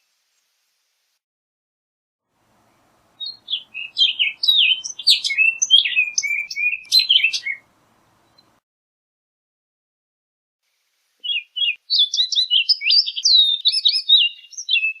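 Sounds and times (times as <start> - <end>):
bird singing: 2.5 - 8.6, 11.2 - 15.0.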